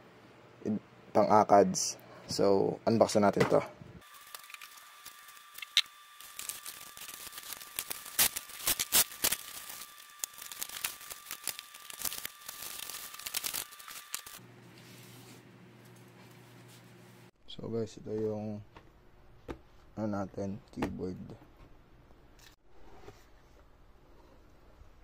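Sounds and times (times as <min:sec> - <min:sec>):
packaging crackling and tearing: 0:04.0 - 0:14.4.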